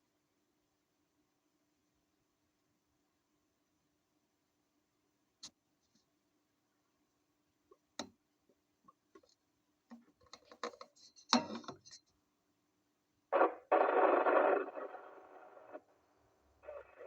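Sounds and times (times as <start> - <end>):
faint steady hum: 10.9 - 17.0
radio static burst: 13.4 - 17.0.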